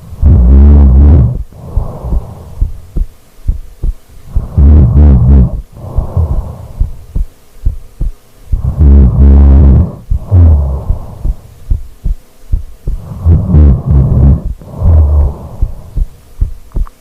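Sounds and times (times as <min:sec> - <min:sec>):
person snoring: 0:00.0 - 0:02.8, 0:04.2 - 0:07.0, 0:08.5 - 0:11.5, 0:12.9 - 0:16.2
breathy exhale: 0:01.3 - 0:02.8, 0:05.5 - 0:07.0, 0:13.0 - 0:16.1.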